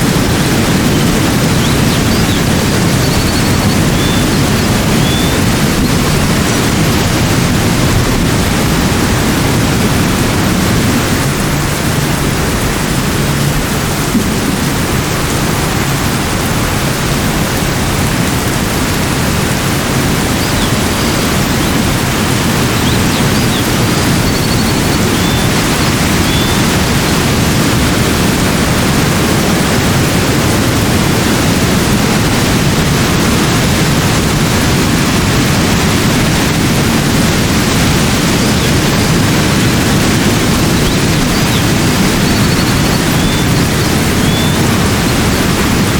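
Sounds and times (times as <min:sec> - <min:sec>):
loud rushing noise: 0:00.0 - 0:45.9
faint high chirps: 0:40.7 - 0:45.2.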